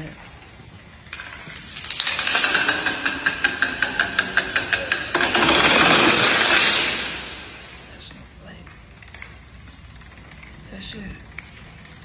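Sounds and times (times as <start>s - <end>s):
rapid tapping strikes: 1.9s - 7.8s.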